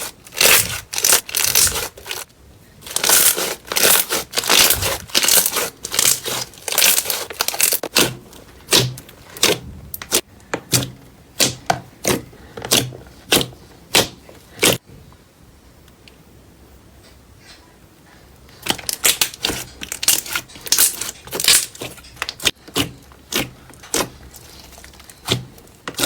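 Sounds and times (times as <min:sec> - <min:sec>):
slime crackling and popping: 0:00.0 - 0:08.1, 0:18.6 - 0:26.0.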